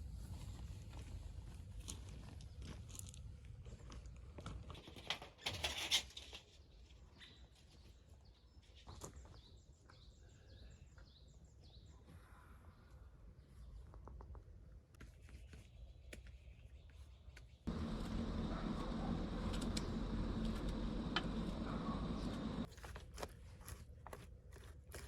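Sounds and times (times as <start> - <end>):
small songbird chirping: 17.7 - 22.7.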